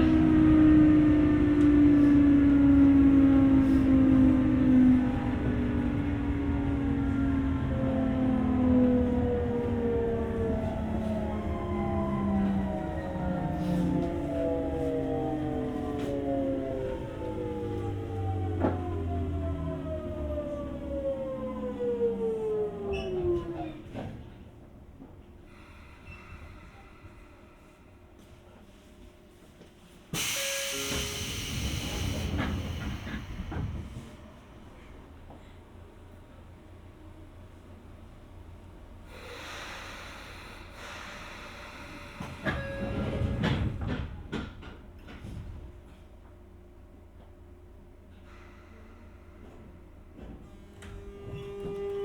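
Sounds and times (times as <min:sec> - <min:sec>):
train inverter whine: 0:00.0 - 0:52.0
train hiss: 0:25.4 - 0:28.6, 0:30.1 - 0:34.8, 0:39.1 - 0:43.2, 0:48.1 - 0:50.8
clunks and rattles: 0:30.9 - 0:34.2, 0:42.2 - 0:46.4.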